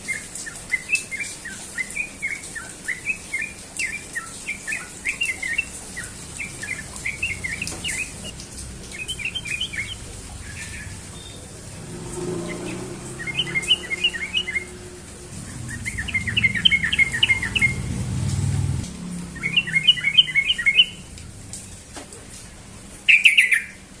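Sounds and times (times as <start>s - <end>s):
bird singing bubbling notes: 0.0s - 21.8s
low rumble: 8.3s - 21.9s.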